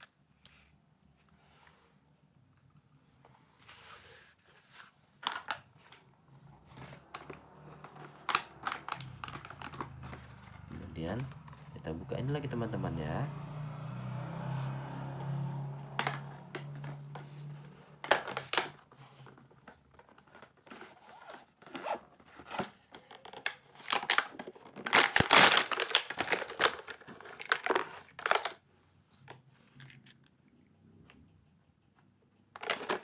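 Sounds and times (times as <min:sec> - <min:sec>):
packaging being torn and crinkled: 0:07.0 - 0:10.8, 0:23.4 - 0:28.6.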